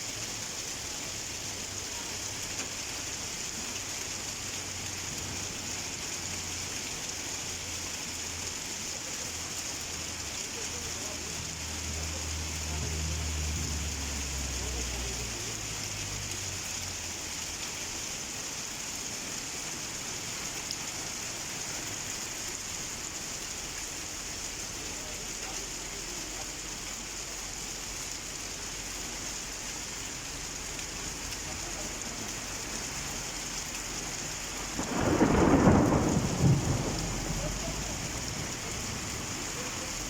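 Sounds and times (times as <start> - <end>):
heavy rain falling: 0.0 - 40.0
thunder rumbling: 34.6 - 39.3.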